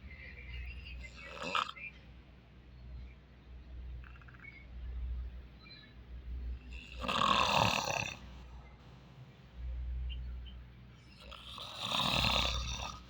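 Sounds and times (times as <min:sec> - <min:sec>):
person snoring: 0:06.7 - 0:08.2, 0:11.2 - 0:13.0.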